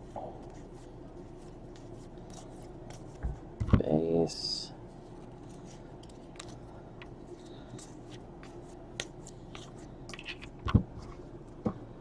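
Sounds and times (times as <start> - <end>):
cards rustling and clicking: 0.4 - 3.2, 5.1 - 10.6.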